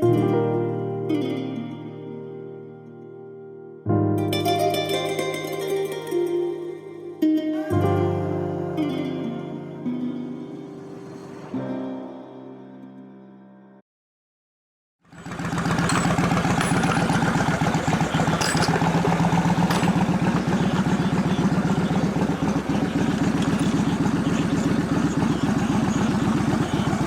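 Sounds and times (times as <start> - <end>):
background music: 0.0 - 13.8
motorcycle engine running: 15.1 - 27.0.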